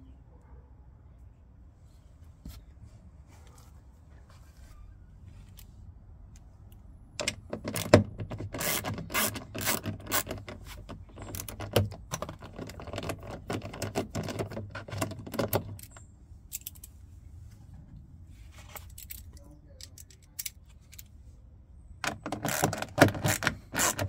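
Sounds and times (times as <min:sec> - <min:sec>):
small metallic clicks and rattles: 0:07.2 - 0:17.0, 0:18.8 - 0:21.1.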